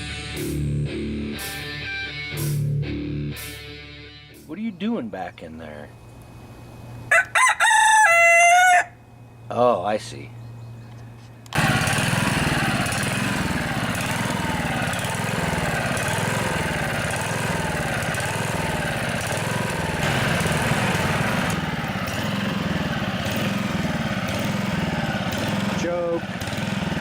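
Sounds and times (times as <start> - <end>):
lawnmower engine surging: 11.4 - 27.0.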